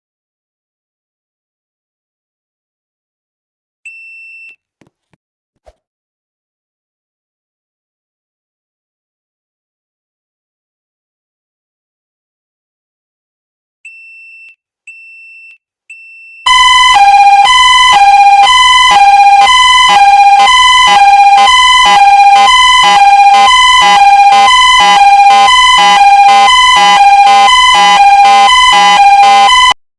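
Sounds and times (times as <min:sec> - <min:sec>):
hi-lo evacuation alarm tone: 0:16.5 - 0:29.8.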